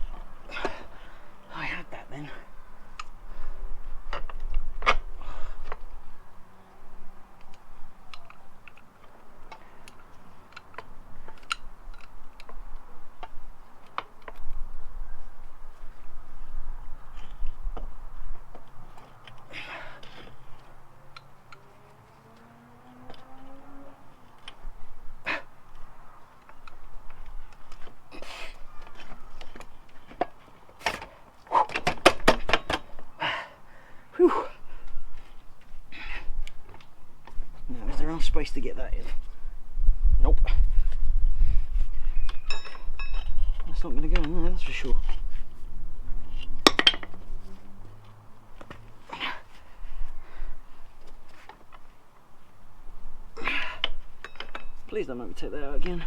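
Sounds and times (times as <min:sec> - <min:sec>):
heavy breathing: 0:00.4 - 0:01.5, 0:05.1 - 0:05.8, 0:18.9 - 0:21.0, 0:24.9 - 0:25.8, 0:31.1 - 0:31.8, 0:33.1 - 0:36.6, 0:48.9 - 0:51.0, 0:53.3 - 0:54.2
grunt of effort: 0:00.5 - 0:01.1, 0:19.5 - 0:20.3, 0:25.2 - 0:25.6, 0:33.2 - 0:34.8, 0:49.0 - 0:49.6, 0:53.4 - 0:53.9
metal parts clicking and knocking: 0:31.7 - 0:33.1, 0:46.4 - 0:47.3, 0:53.8 - 0:55.0
metal parts knocking and clicking: 0:46.6 - 0:47.2.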